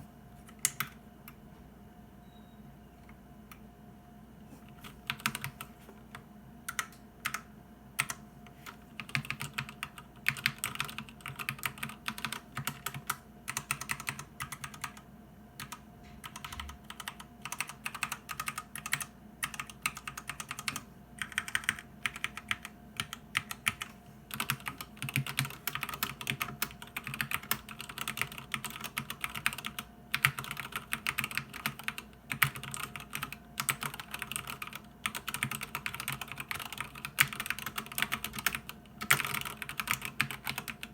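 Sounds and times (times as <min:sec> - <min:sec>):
mechanical keyboard typing: 0:05.0 - 0:05.6, 0:06.7 - 0:08.2, 0:09.0 - 0:15.0, 0:15.6 - 0:40.9.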